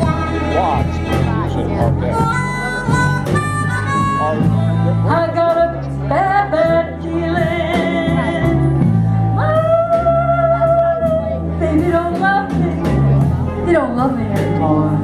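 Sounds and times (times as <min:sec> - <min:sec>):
harmonica bending notes: 0:00.0 - 0:11.0
live blues band playing: 0:00.0 - 0:15.0.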